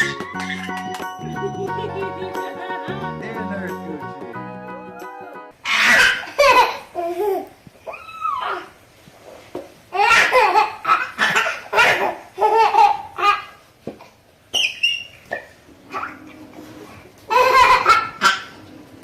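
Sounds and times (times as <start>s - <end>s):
loud laughter: 0.4s - 3.2s.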